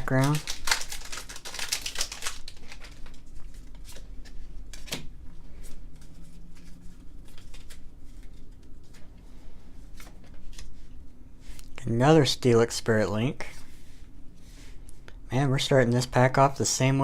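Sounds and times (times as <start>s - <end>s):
trading cards and foil wrapper rustling: 0.0s - 9.1s.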